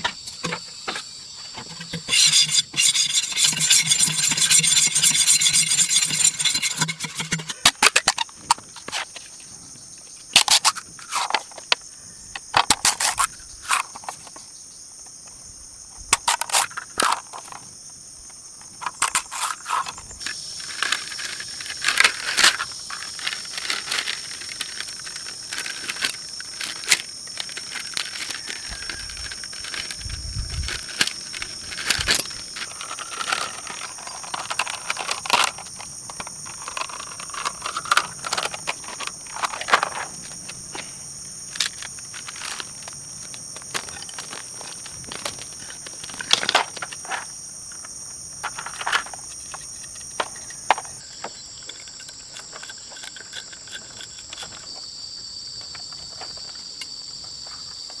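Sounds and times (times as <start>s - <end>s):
insects trilling: 0.0s - 58.0s
sharp clicks and knocks: 1.6s - 9.0s.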